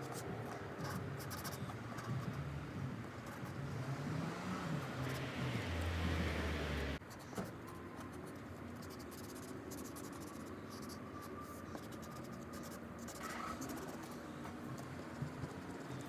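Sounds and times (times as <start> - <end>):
marker scratching on paper: 0.0 - 2.4, 4.8 - 6.0, 7.0 - 16.0.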